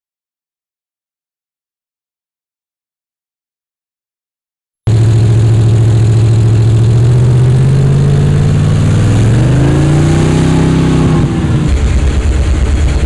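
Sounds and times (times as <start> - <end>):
jeep engine running: 4.9 - 13.0.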